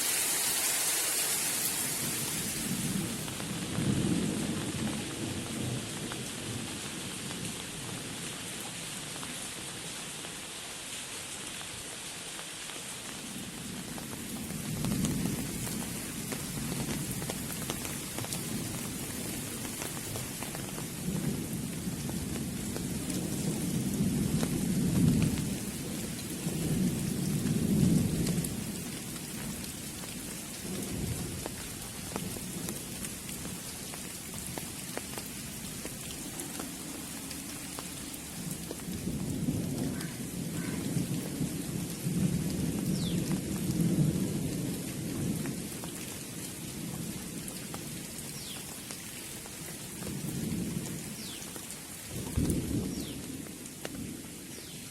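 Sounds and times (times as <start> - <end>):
steady rain: 0.0 - 54.9
thunder rumbling: 1.9 - 8.1, 13.3 - 33.6, 52.1 - 53.6.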